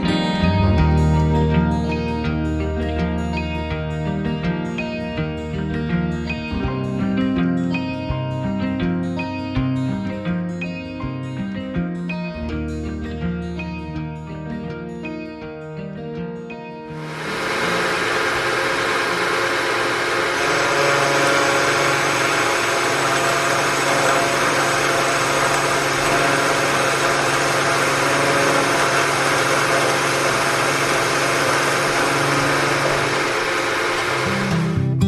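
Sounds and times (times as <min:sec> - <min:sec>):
metalworking machine whirring: 0:17.0 - 0:34.8.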